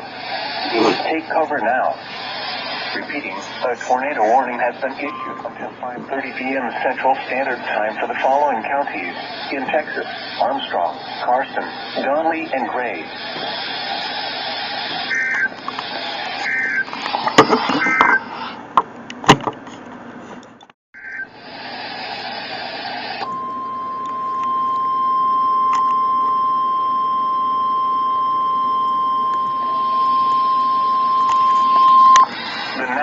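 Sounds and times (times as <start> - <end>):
steady warning alarm tone: 0.0 - 17.0, 21.0 - 33.0
harsh buzzing data bursts: 0.0 - 18.2, 21.0 - 33.0
radio static: 0.0 - 18.4, 29.3 - 33.0.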